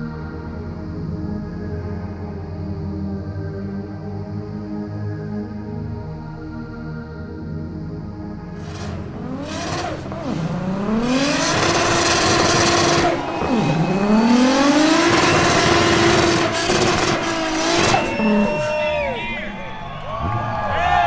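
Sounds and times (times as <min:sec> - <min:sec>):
car engine revving hard: 0:08.6 - 0:18.8.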